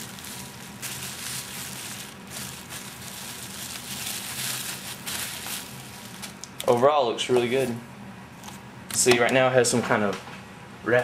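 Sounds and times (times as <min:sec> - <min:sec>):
plastic packaging crinkling: 0:00.0 - 0:06.9.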